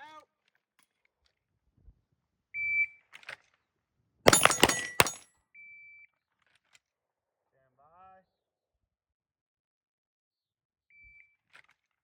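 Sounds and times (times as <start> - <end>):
pistol shots: 4.3 - 5.2.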